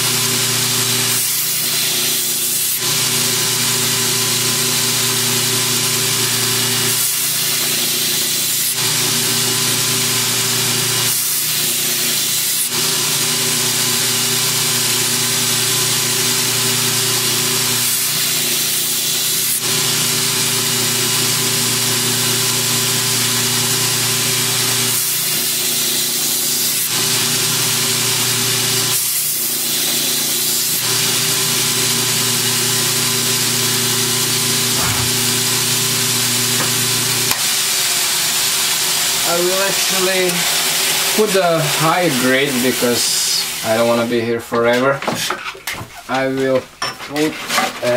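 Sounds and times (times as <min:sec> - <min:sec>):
blade grinding hiss: 0:00.0 - 0:03.2, 0:06.3 - 0:09.6, 0:10.8 - 0:14.4, 0:24.8 - 0:31.8, 0:34.2 - 0:44.1
belt grinder motor hum: 0:00.0 - 0:44.2.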